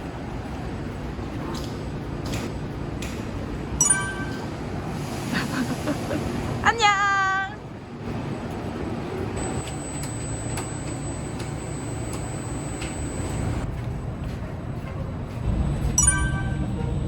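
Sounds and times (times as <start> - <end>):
thin high whine: 9.4 - 13.6.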